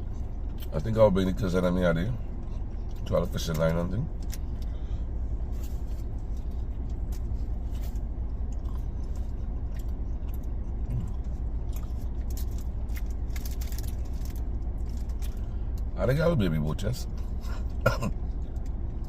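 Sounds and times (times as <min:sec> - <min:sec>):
car engine idling: 0:00.0 - 0:19.0
small crunches: 0:05.6 - 0:15.9.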